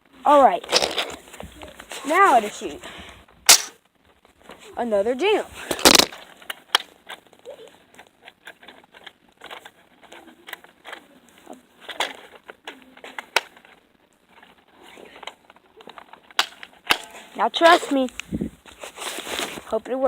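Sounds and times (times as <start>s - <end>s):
toy blaster plastic clicks and rattles: 3.5s - 3.7s, 11.8s - 13.8s, 15.2s - 17.2s.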